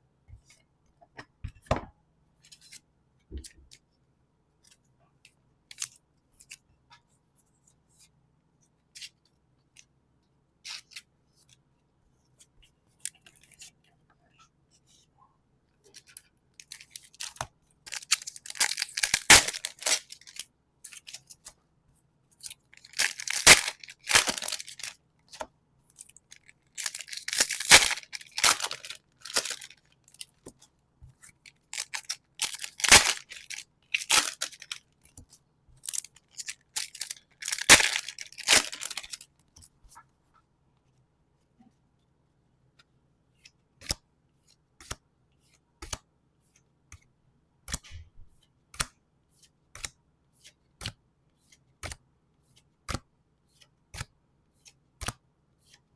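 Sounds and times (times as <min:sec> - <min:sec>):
foil packs tearing and crinkling: 0:17.9 - 0:20.4, 0:22.9 - 0:24.9, 0:26.8 - 0:29.7, 0:31.8 - 0:34.8, 0:35.8 - 0:39.2.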